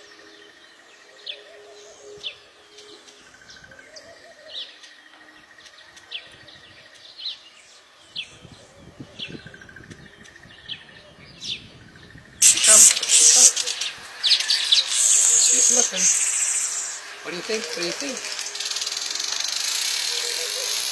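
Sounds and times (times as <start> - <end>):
birds chirping: 0.0 - 20.9
thin buzzy trill: 12.4 - 20.9.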